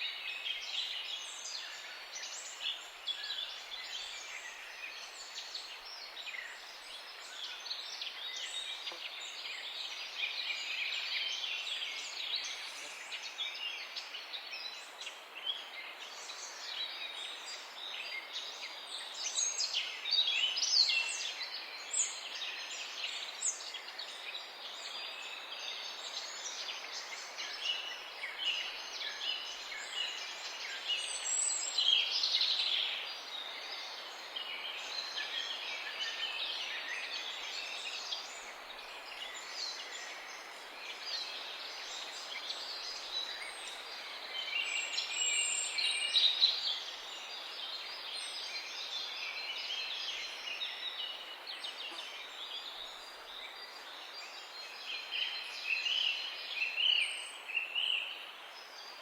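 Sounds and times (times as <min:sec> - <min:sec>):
songbirds chirping and trilling: 0:00.0 - 0:59.0
steady outdoor hiss: 0:00.0 - 0:59.0.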